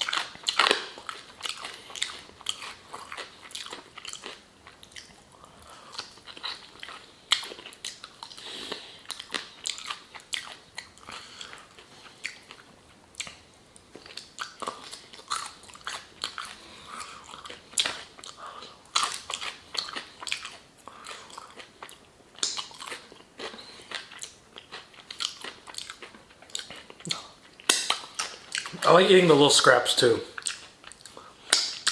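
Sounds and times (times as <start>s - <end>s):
crisp breading crunching: 0.0s - 5.2s
lip smacks: 0.0s - 5.2s, 5.8s - 28.8s, 30.4s - 31.9s
wet chewing: 0.0s - 28.9s, 30.4s - 31.9s.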